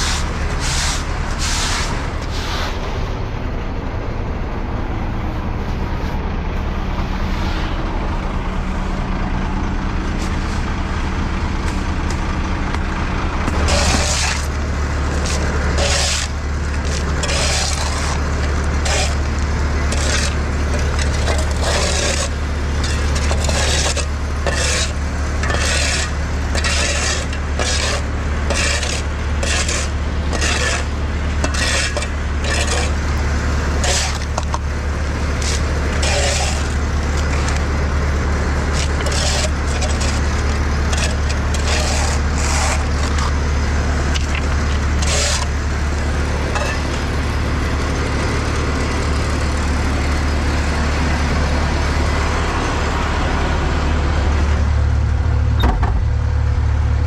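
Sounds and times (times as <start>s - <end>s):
short scraping noises: 0.0s - 3.2s, 13.5s - 33.0s, 33.8s - 37.7s, 38.5s - 43.4s, 44.1s - 45.6s, 46.3s - 47.1s
skid loader engine running: 0.0s - 57.0s.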